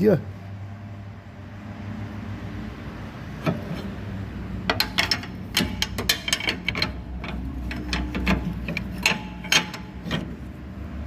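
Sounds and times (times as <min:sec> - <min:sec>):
suspension clicks and knocks: 0:03.3 - 0:04.0, 0:04.6 - 0:10.8.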